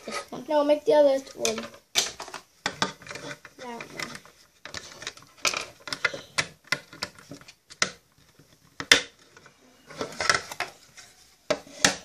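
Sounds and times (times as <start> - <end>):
plastic toy clicking and knocking: 1.3 - 10.7.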